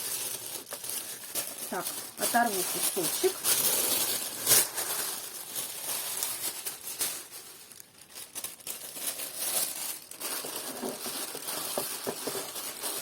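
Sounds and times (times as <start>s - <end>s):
tissue paper crinkling and tearing: 0.0s - 13.0s.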